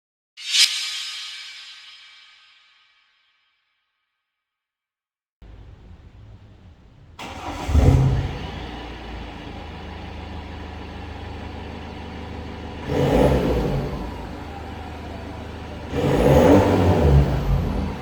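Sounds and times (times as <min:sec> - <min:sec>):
diesel car engine idling and revving: 0:05.4 - 0:18.0.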